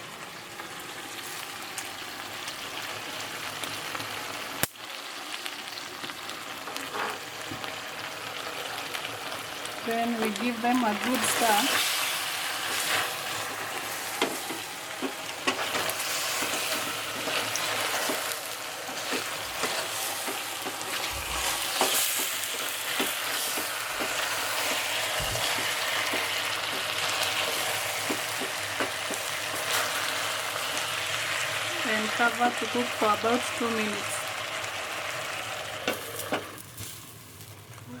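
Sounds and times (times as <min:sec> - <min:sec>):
chicken sizzling in a frying pan: 0:00.0 - 0:38.0
spoon scraping and knocking pan: 0:12.6 - 0:30.9.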